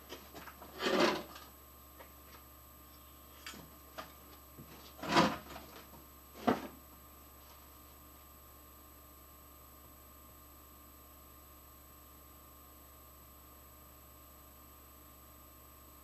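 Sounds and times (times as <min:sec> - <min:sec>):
rustling scraping handling noises: 0:00.0 - 0:02.4, 0:03.3 - 0:06.8.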